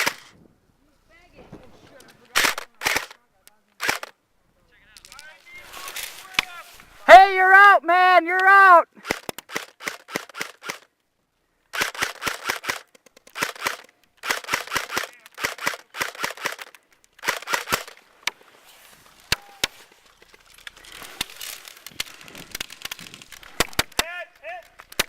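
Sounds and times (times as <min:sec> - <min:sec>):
airsoft guns firing bursts: 0:00.0 - 0:00.3, 0:02.3 - 0:03.2, 0:03.8 - 0:04.1, 0:08.4 - 0:10.9, 0:11.7 - 0:18.0
scattered pops: 0:00.0 - 0:00.4, 0:02.0 - 0:04.2, 0:04.9 - 0:11.1, 0:11.7 - 0:25.0.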